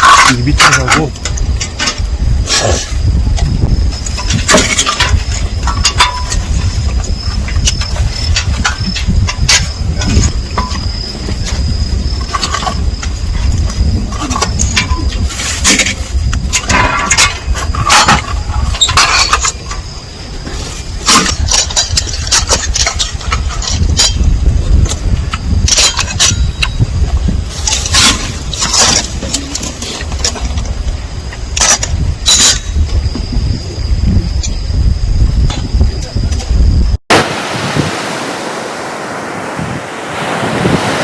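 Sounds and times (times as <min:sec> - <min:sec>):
wind rumbling on microphone: 0:00.0 - 0:41.0
knocks and clinks: 0:04.0 - 0:06.8.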